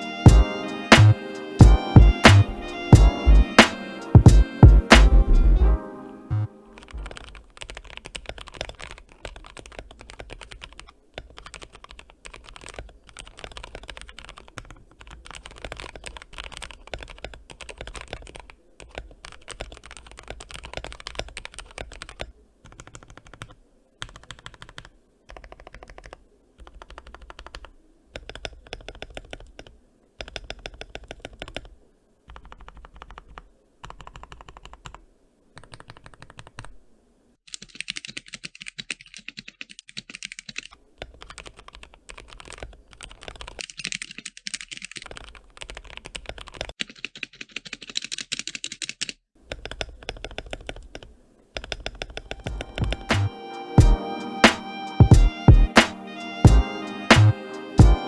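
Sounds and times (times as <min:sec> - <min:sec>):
mechanical keyboard typing: 0:07.0 - 0:29.6, 0:32.3 - 0:35.0, 0:35.6 - 0:36.7, 0:37.5 - 0:49.2.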